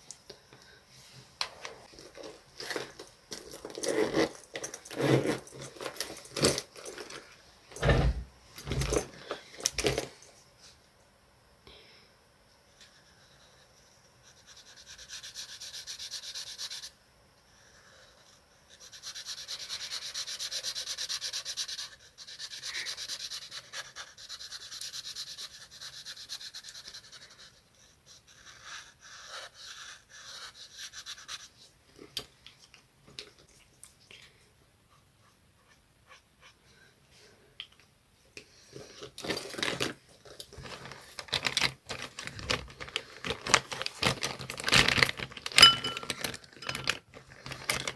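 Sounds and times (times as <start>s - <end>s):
scribbling on paper: 14.2s - 16.9s, 18.7s - 31.6s.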